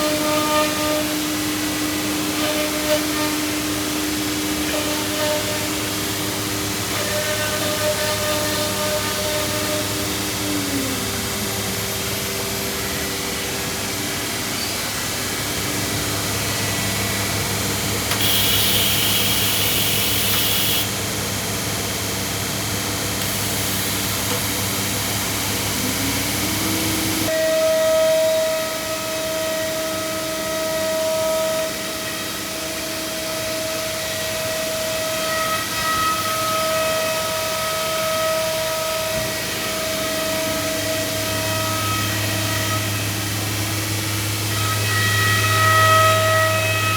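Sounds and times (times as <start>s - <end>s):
router spindle whine: 3.5s - 29.6s
machine hum: 5.4s - 27.3s
compressed air hiss: 18.1s - 21.0s, 23.2s - 27.3s.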